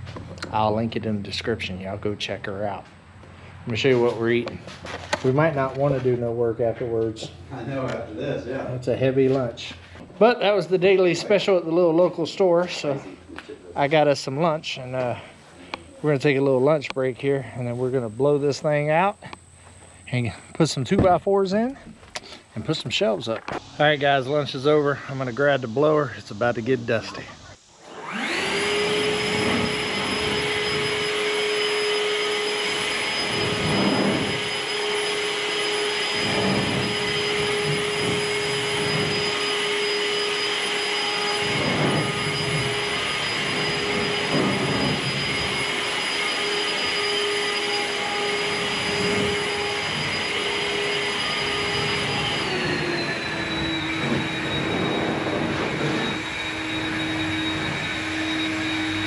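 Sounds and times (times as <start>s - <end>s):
leaf blower whine: 9.6s - 59.0s.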